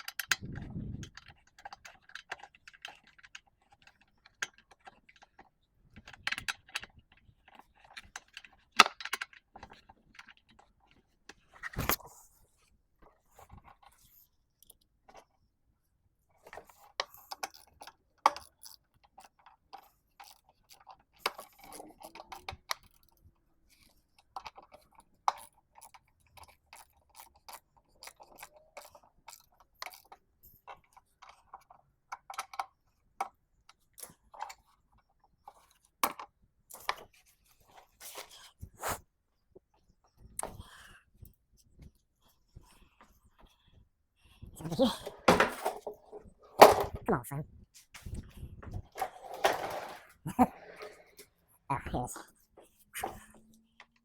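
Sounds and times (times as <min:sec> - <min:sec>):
metal parts and tools clattering: 0:44.8 - 0:47.0, 0:48.9 - 0:51.1.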